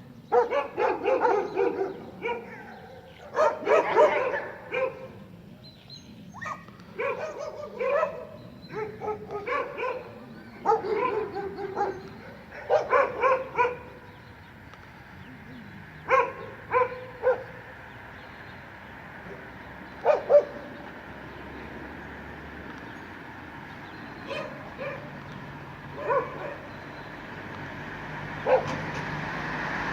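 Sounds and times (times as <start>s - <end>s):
dog barking: 0.3s - 5.2s, 6.4s - 14.1s, 16.0s - 17.6s, 19.2s - 20.7s, 24.2s - 25.2s, 25.9s - 26.8s, 28.4s - 28.9s.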